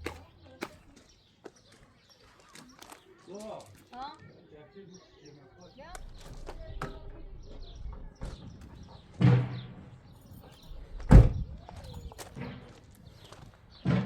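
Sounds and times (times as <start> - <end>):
car doors slamming: 11.0 - 11.5.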